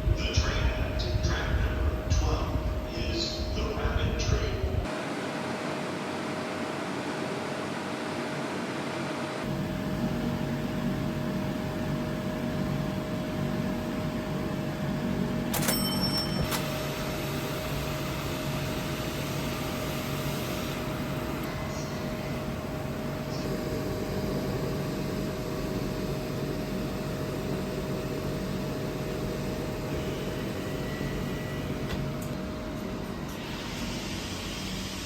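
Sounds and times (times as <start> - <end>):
electrical hum: 0.0 - 35.0.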